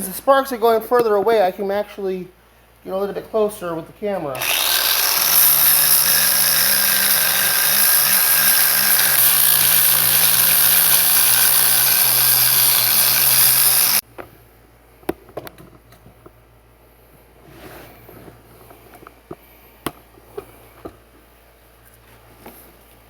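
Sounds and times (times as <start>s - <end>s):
angle grinder grinding steel: 4.3s - 14.0s.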